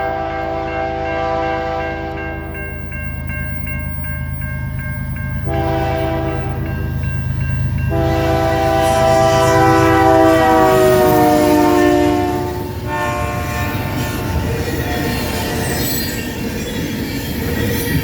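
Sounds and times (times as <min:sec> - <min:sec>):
locomotive air horn blasts: 0:00.0 - 0:02.2, 0:05.5 - 0:06.6, 0:07.9 - 0:14.6
rapid regular ringing: 0:01.4 - 0:08.9.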